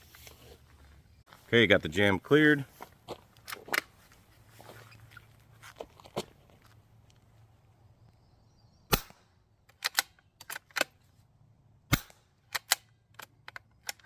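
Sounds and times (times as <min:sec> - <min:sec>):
suppressed rifle shots: 0:08.9 - 0:10.0, 0:11.9 - 0:12.7
rifle bolt metallic clicks: 0:09.0 - 0:11.0, 0:12.0 - 0:14.0.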